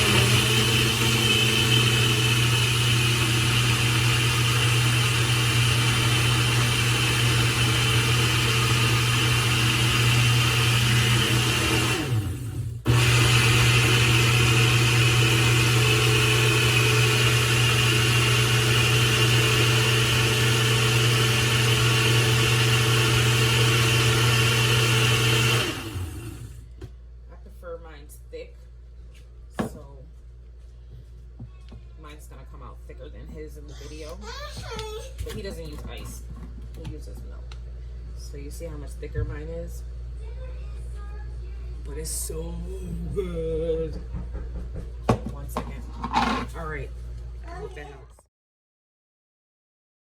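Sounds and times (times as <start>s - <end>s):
blender motor blending ice: 0.0s - 26.7s, 46.0s - 46.7s.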